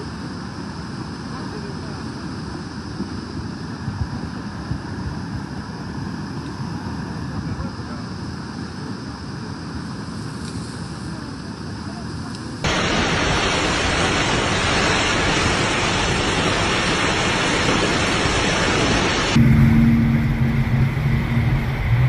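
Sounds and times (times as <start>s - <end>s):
floodwater rushing: 12.6s - 22.0s.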